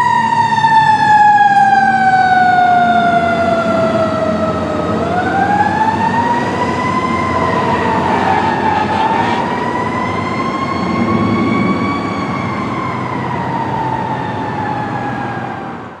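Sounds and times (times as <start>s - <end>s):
siren wailing: 1.2s - 15.8s
road noise: 3.4s - 16.0s
truck engine rumbling: 4.8s - 13.2s.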